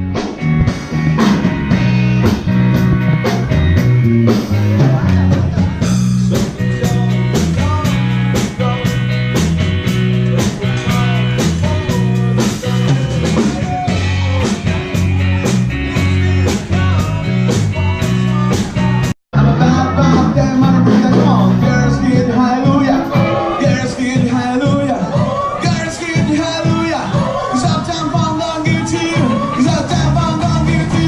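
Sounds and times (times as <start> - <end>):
rock music with beat: 0.0 - 31.0.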